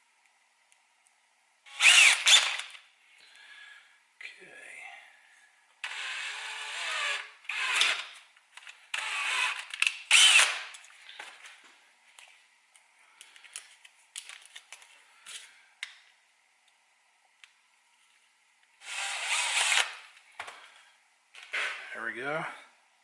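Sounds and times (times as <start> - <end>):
power drill running: 1.7 - 2.8, 5.8 - 8.2, 8.9 - 10.7, 18.8 - 20.0.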